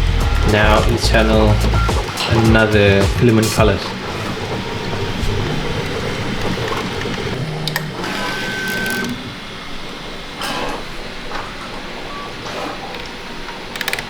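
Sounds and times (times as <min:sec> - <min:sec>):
stepper motors whirring: 0:00.0 - 0:14.0
sharp clicks: 0:12.4 - 0:14.0.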